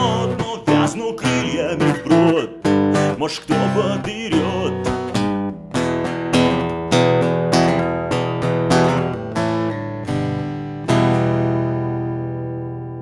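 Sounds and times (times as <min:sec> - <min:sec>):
acoustic guitar strumming: 0:00.0 - 0:13.0.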